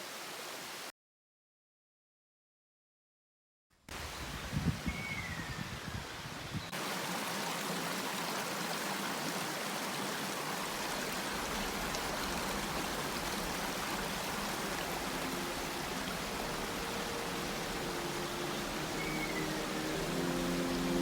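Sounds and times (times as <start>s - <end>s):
stream rushing: 0.0s - 0.9s, 6.1s - 21.0s.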